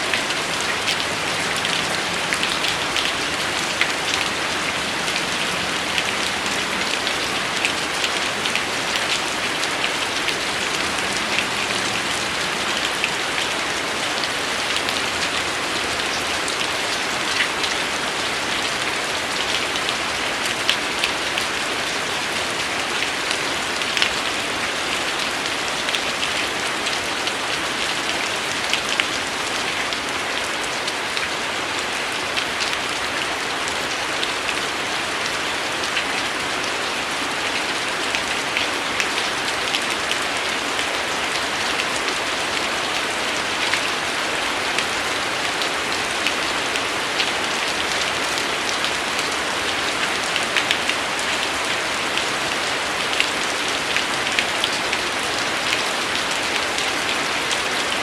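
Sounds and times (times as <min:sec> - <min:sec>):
steady rain hiss: 0:00.0 - 0:58.0
raindrops ticking on hard surface: 0:00.1 - 0:13.5.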